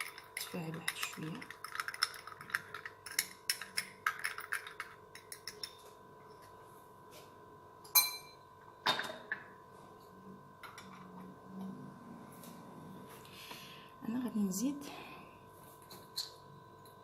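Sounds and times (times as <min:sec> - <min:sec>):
spoon clinking against glass: 0:07.9 - 0:08.4.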